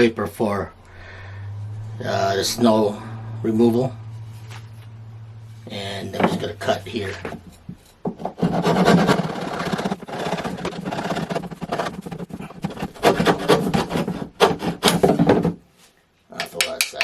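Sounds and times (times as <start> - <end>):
saw cutting through wood: 1.0 - 15.2.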